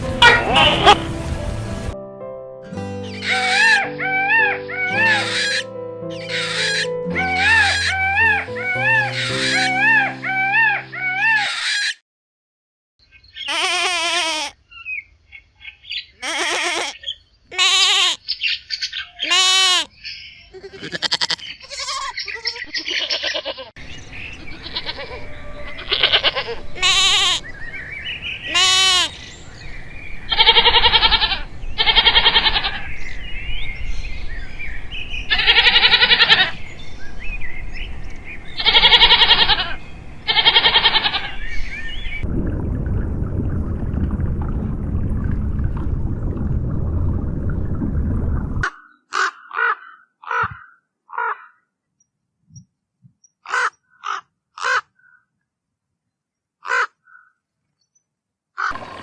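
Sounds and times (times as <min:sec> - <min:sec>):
loud quavering animal calls: 0:00.2 - 0:01.0, 0:03.1 - 0:12.0, 0:30.3 - 0:32.9, 0:35.3 - 0:36.6, 0:38.6 - 0:42.2, 0:48.6 - 0:51.6, 0:53.4 - 0:55.2, 0:56.6 - 0:57.3, 0:58.6 - 0:59.0.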